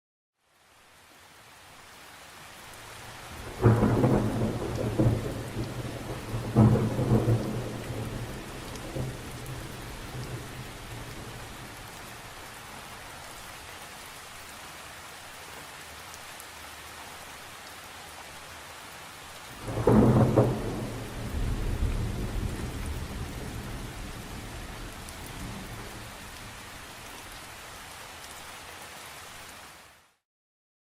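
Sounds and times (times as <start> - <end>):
steady rain falling: 0.4 - 30.2
thunder rumbling: 3.3 - 12.1, 19.6 - 26.8.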